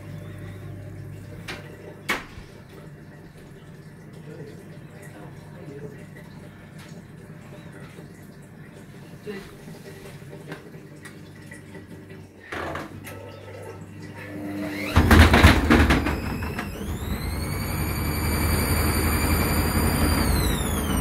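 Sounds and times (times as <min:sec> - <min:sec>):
washing machine motor whine: 0:00.0 - 0:21.0
washing machine drum banging: 0:14.8 - 0:16.8.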